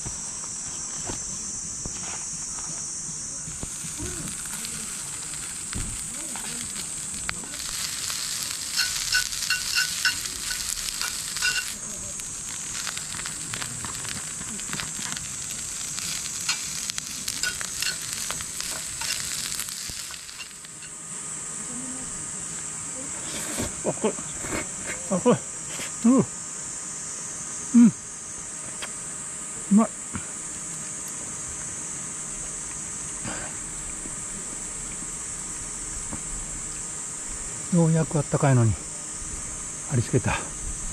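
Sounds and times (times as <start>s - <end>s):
high insect drone: 0.0s - 40.9s
fire crackling: 1.6s - 40.9s
meat sizzling in a pan: 3.5s - 22.0s.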